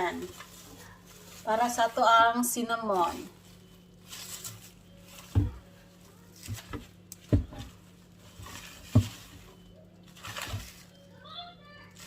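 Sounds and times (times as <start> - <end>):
packaging rustling: 0.0 - 11.3
baking pans thumping: 4.4 - 10.9.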